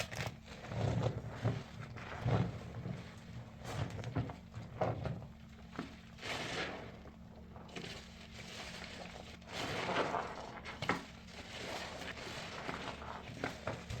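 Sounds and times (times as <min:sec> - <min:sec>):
sponge squishing and crackling: 0:00.0 - 0:14.0.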